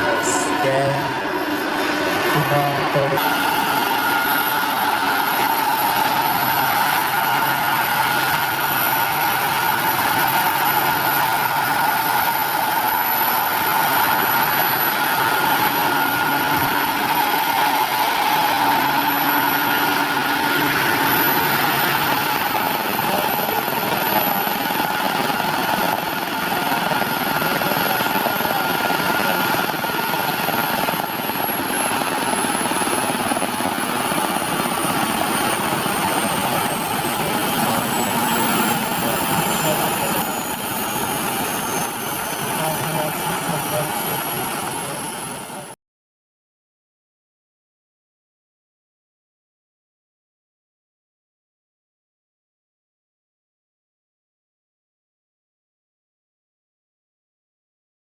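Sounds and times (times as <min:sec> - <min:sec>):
helicopter rotor and engine noise: 0:00.0 - 0:45.8
high turbine whine: 0:00.0 - 0:45.8.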